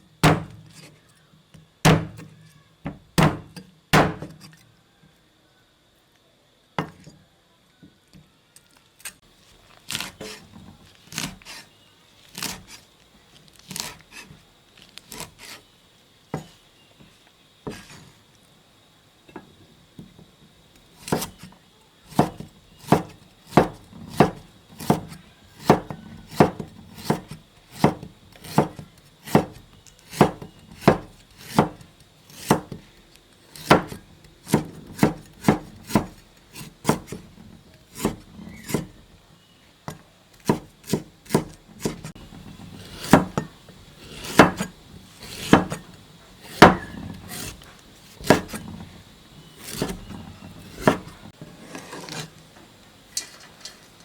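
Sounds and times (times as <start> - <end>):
knife chopping on wooden board: 0.2 - 0.8, 1.9 - 2.3, 2.9 - 4.5, 21.0 - 21.5, 22.1 - 32.9, 33.5 - 39.0, 39.9 - 48.8, 49.6 - 51.2.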